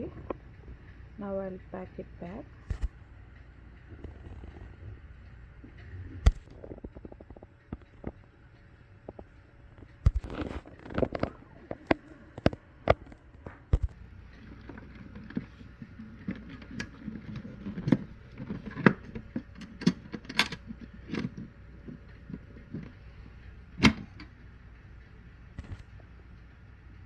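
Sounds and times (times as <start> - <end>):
metal stove parts clinking: 14.4 - 23.0, 23.8 - 24.3.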